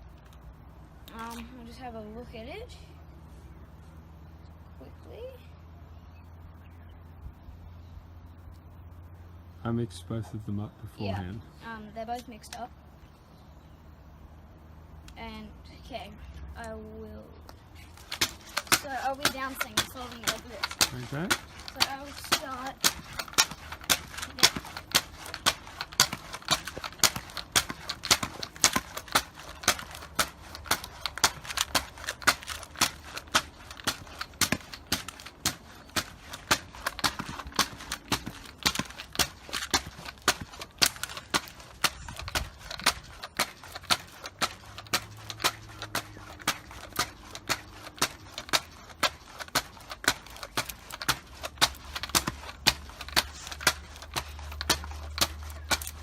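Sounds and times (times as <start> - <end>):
pogo stick bouncing: 17.8 - 56.0.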